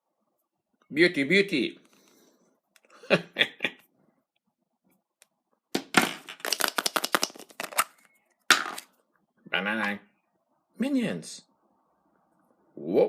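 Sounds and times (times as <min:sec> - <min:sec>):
surprise egg wrapper crackling: 0:06.3 - 0:08.9.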